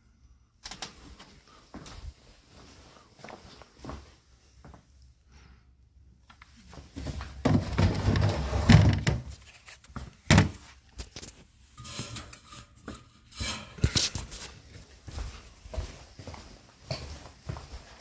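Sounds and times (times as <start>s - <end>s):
scraping rustle: 11.3s - 14.8s.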